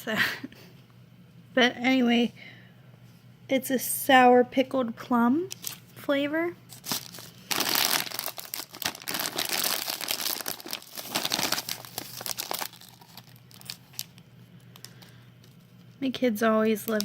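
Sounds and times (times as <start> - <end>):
plastic snack bag crinkling: 6.7 - 17.0.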